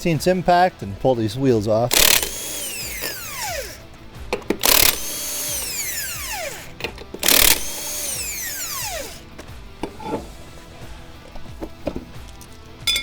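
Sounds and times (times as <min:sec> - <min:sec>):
impact wrench hammering: 0:01.9 - 0:10.2
motor whine spinning down: 0:02.0 - 0:03.8, 0:04.6 - 0:09.2.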